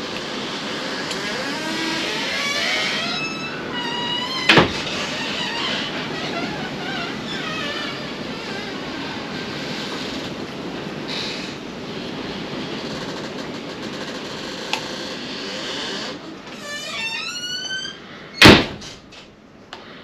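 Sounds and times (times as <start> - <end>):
rising squeaks: 1.0 - 10.2, 12.8 - 18.0.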